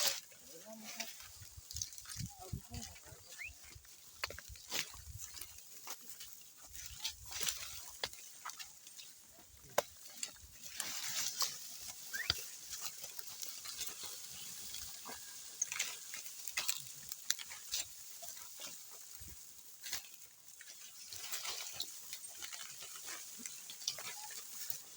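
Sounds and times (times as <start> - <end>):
plough clicking and scraping soil: 0.0 - 24.9.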